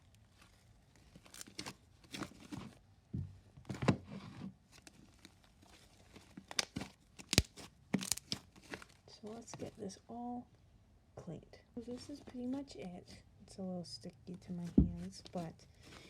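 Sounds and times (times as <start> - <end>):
sticky slime crackling and snapping: 6.1 - 9.0.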